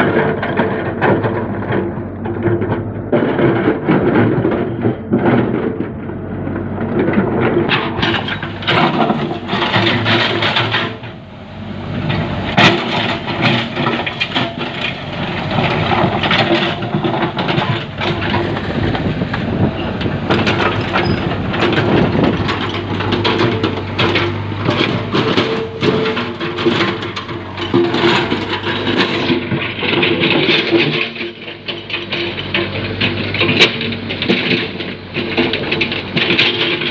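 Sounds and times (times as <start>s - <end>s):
diesel engine under load: 0.0s - 36.9s
digging knocks and clatters: 6.6s - 11.2s, 12.0s - 36.9s.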